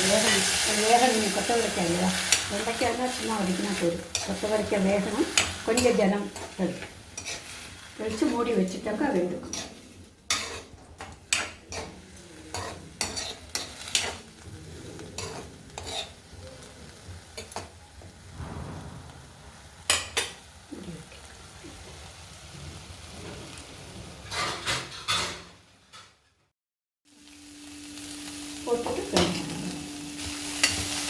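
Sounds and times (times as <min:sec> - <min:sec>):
beans sizzling: 0:00.0 - 0:18.4, 0:19.3 - 0:24.6, 0:27.1 - 0:31.0
spatula scraping pan: 0:01.9 - 0:14.2, 0:15.2 - 0:16.3, 0:24.2 - 0:26.1.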